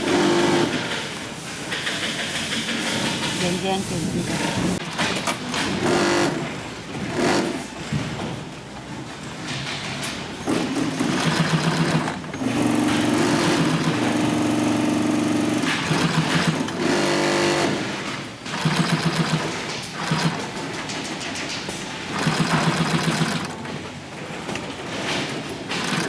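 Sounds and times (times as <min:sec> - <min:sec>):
industrial sewing machine stitching: 0:00.0 - 0:01.0, 0:04.4 - 0:07.6, 0:10.5 - 0:21.1, 0:21.9 - 0:23.8, 0:25.6 - 0:26.0.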